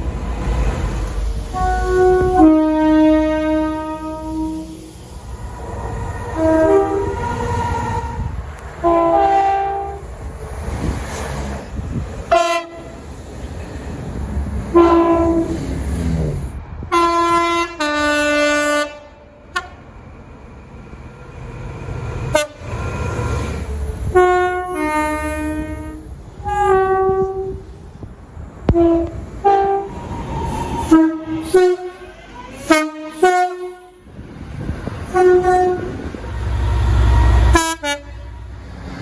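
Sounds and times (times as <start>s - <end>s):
passing trains rumbling: 0.0s - 39.0s
train horn blasts: 1.5s - 5.0s, 6.3s - 10.0s, 12.3s - 13.0s, 14.7s - 16.3s, 16.9s - 19.8s, 22.3s - 27.6s, 28.7s - 30.0s, 30.8s - 34.1s, 35.1s - 38.6s.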